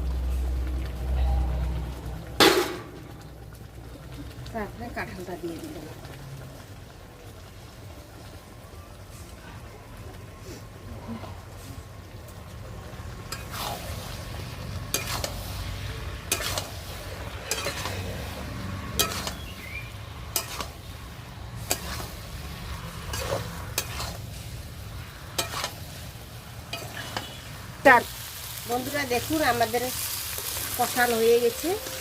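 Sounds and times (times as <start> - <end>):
food sizzling in oil: 0.0 - 8.4, 11.6 - 32.0
spatula scraping and knocking pan: 17.4 - 18.1, 18.9 - 19.4, 20.3 - 20.8, 21.6 - 22.2, 25.4 - 25.8.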